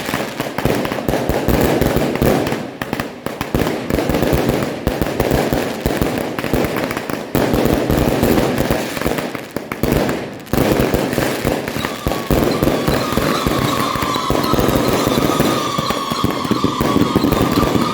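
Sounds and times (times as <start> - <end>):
firecrackers crackling: 0.0 - 17.9.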